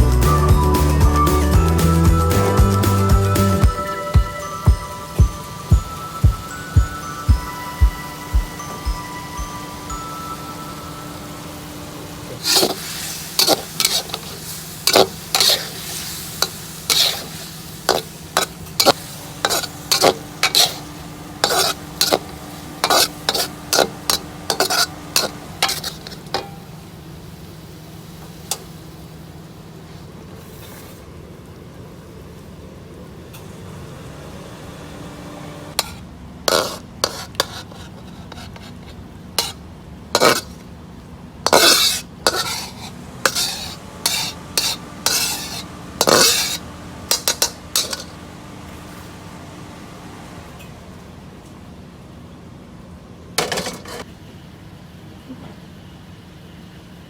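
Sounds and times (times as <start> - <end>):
steady low hum: 5.2 - 27.8
utensil scraping a pan: 12.3 - 26.5, 35.8 - 39.6, 40.2 - 40.6, 41.4 - 48.2.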